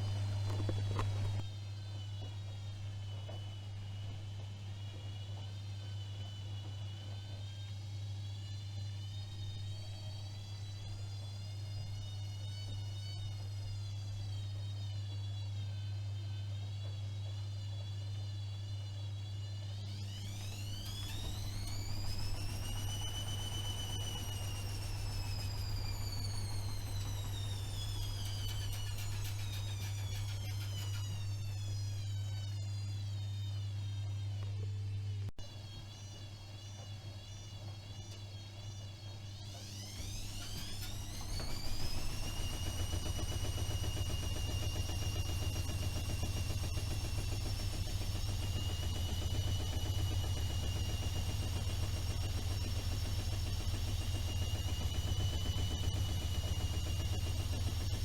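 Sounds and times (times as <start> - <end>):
washing machine motor whine: 0.0 - 58.0
low hum: 20.0 - 58.0.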